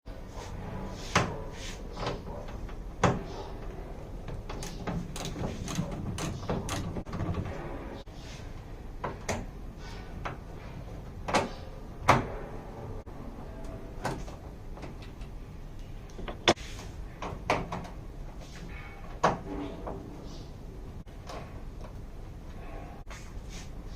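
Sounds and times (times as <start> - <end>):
sharp clicks and knocks: 2.0 - 7.8.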